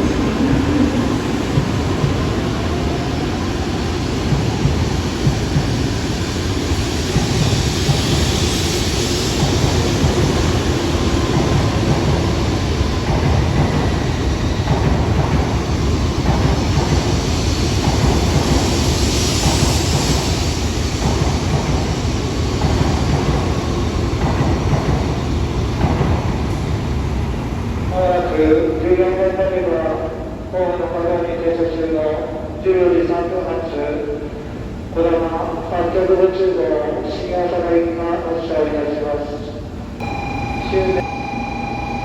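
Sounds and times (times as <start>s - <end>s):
train wheels and traction noise: 0.0s - 42.0s.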